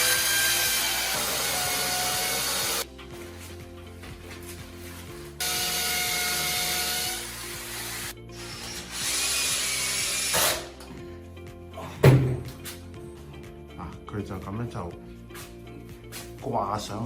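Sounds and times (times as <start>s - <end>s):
electric drill whining: 0.0s - 2.9s, 5.4s - 10.8s.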